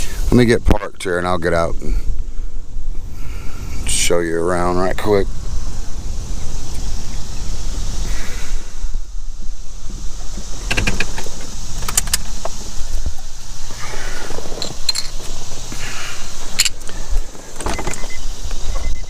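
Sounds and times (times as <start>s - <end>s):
low steady rumble: 0.0s - 19.0s
sharp clicks and knocks: 9.8s - 13.2s
keys jangling: 14.4s - 15.4s, 16.5s - 18.1s.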